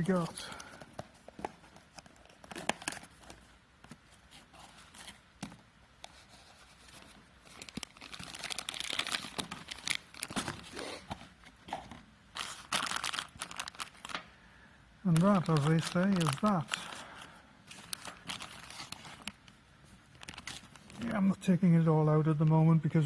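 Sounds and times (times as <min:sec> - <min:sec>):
packaging crinkling and tearing: 0:00.0 - 0:03.5, 0:06.1 - 0:14.2, 0:15.1 - 0:21.2.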